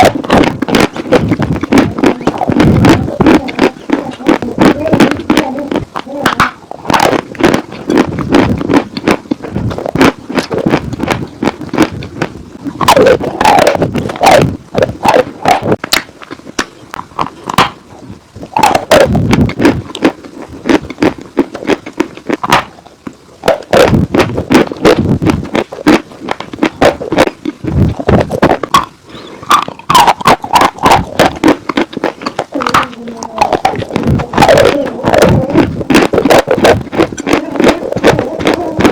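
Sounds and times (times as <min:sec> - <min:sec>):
chalk being chewed crunching: 0:00.0 - 0:17.8, 0:18.5 - 0:38.9.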